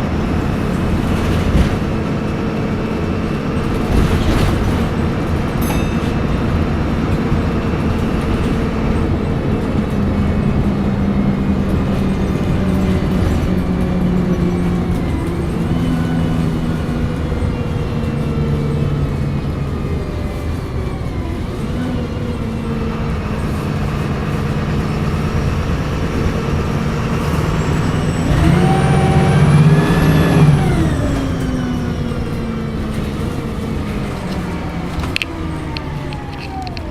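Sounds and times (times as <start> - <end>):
bus diesel engine running: 0.0 - 36.9
turbocharger whining: 4.9 - 36.9.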